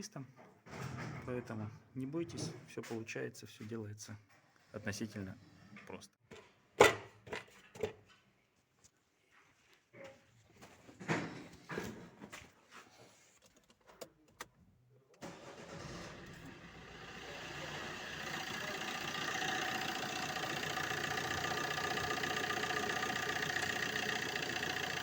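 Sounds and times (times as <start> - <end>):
diesel engine starting and idling: 15.2 - 25.0.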